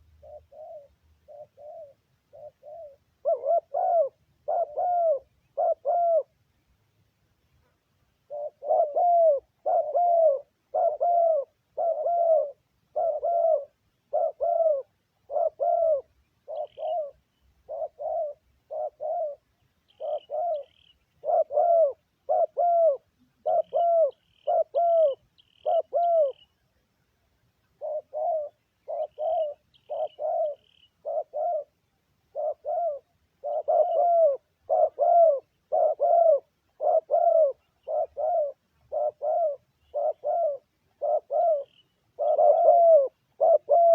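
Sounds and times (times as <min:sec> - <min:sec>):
dove cooing: 0:00.0 - 0:06.4, 0:07.6 - 0:26.6, 0:27.7 - 0:43.9
small birds chirping: 0:07.4 - 0:43.9.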